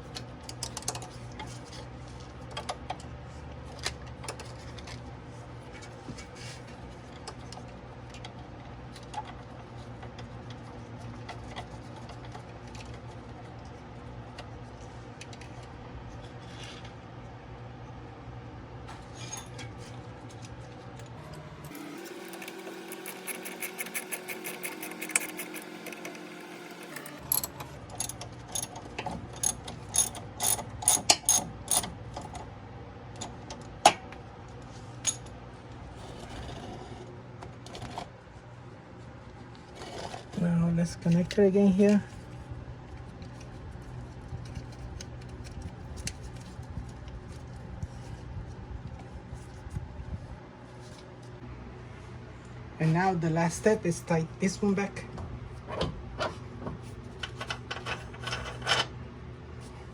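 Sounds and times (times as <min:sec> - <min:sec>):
steady low hum: 0:00.0 - 0:59.9
small parts clicking and clinking: 0:21.7 - 0:26.2, 0:26.8 - 0:31.9.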